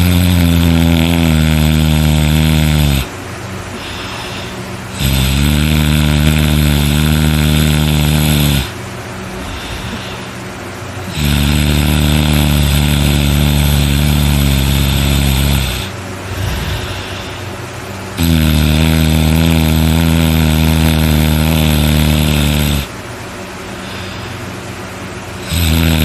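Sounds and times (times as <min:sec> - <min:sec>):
person snoring loudly: 0:00.0 - 0:03.1, 0:03.8 - 0:08.8, 0:09.4 - 0:10.4, 0:11.0 - 0:17.5, 0:18.2 - 0:23.0, 0:25.4 - 0:26.0
quiet breath: 0:03.7 - 0:04.8, 0:09.3 - 0:10.4, 0:16.3 - 0:17.6, 0:23.7 - 0:24.6.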